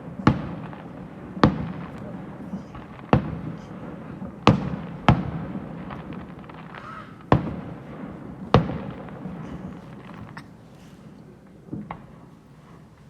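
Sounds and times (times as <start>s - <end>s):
fireworks bangs: 0.0s - 12.9s
fireworks crackling and pops: 0.0s - 13.0s.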